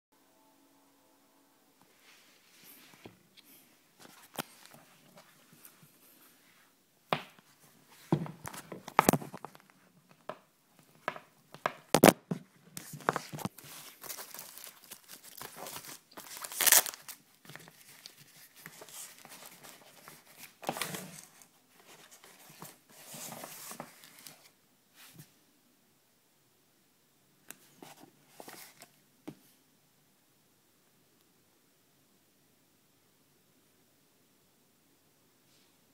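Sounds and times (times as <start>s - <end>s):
crinkling and rustling: 2.0s - 6.4s, 7.2s - 25.3s, 27.5s - 29.0s.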